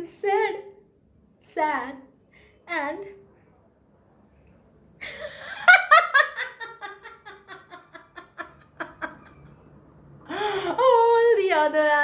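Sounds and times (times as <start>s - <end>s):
person laughing: 5.0s - 9.4s.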